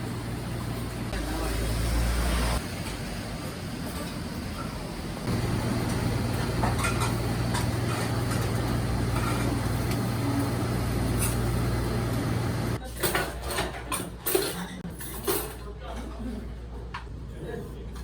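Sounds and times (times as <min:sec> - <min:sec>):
low machine hum: 0:03.1 - 0:12.8.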